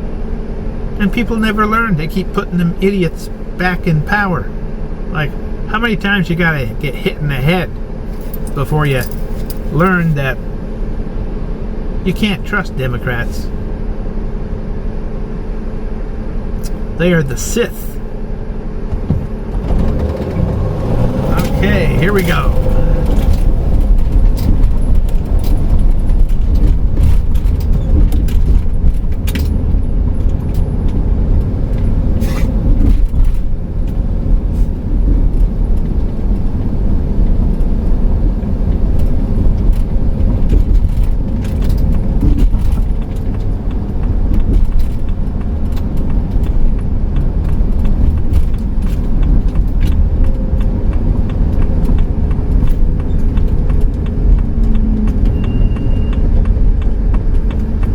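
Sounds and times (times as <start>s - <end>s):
engine and road rumble: 0.0s - 57.9s
small rattles and clicks: 22.2s - 37.8s, 38.7s - 57.9s.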